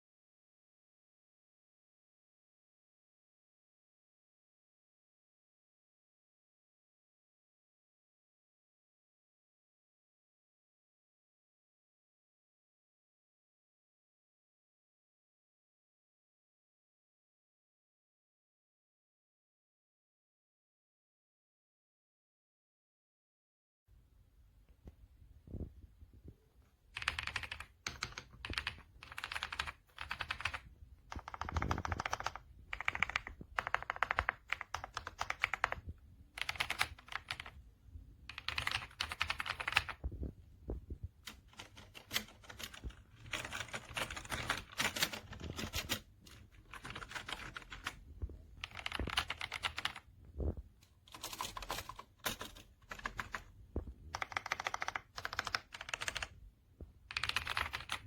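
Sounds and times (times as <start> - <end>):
mechanical keyboard key clicks: 54.2 - 56.3.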